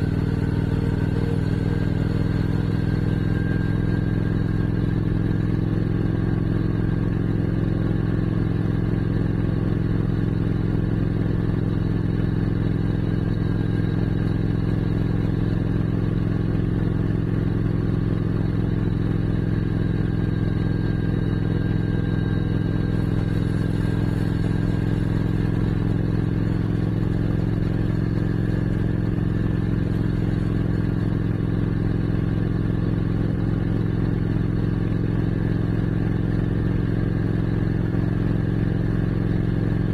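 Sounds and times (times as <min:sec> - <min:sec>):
motorcycle engine cruising: 0:00.0 - 0:08.2.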